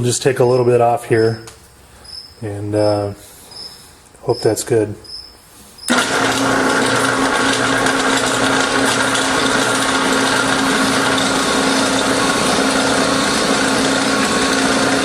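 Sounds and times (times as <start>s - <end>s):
milling machine cutting: 5.9s - 15.0s.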